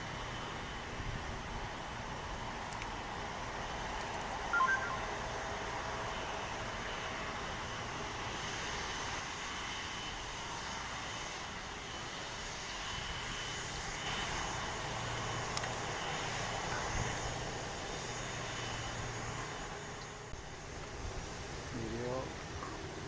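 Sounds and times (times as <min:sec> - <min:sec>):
jet engines rushing: 0:00.0 - 0:23.0
low hum: 0:04.4 - 0:06.3.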